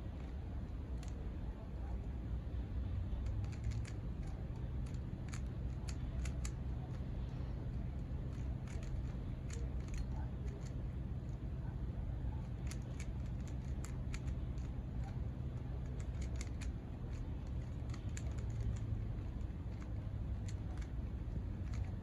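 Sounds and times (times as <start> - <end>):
puzzle cube clicking: 3.2 - 6.7, 8.3 - 10.8, 12.6 - 14.8, 15.8 - 22.0.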